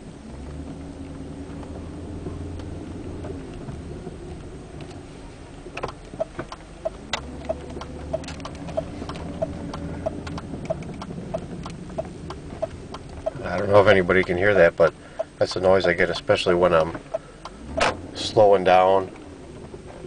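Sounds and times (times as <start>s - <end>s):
road and engine rumble: 0.0s - 20.0s
rhythmic tick and squeak: 5.8s - 14.4s.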